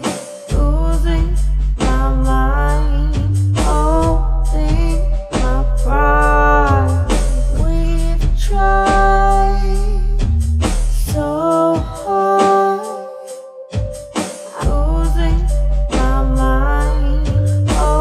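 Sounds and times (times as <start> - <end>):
heavy bass backing: 0.0 - 11.3, 14.6 - 18.0
person singing: 0.0 - 18.0.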